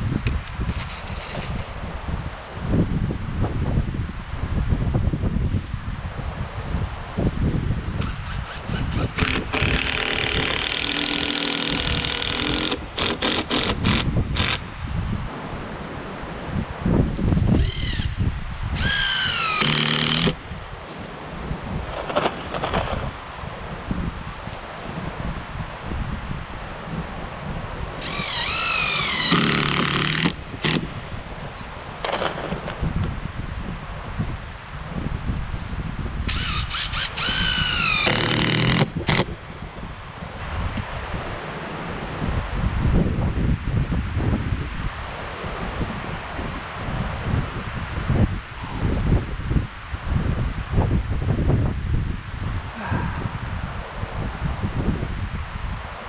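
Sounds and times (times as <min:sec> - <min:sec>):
wind noise on microphone: 0:00.0 - 0:56.0
power drill driving screws: 0:08.0 - 0:14.6, 0:17.6 - 0:18.1, 0:18.8 - 0:20.4, 0:28.0 - 0:30.9, 0:36.3 - 0:39.3.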